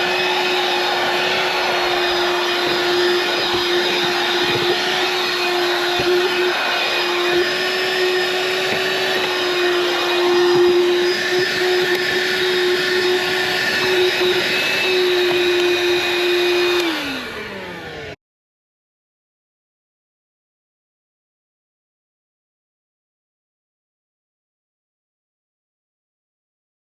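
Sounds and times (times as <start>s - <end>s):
handheld vacuum running: 0.0s - 18.2s
vacuum motor winding down: 0.0s - 18.2s.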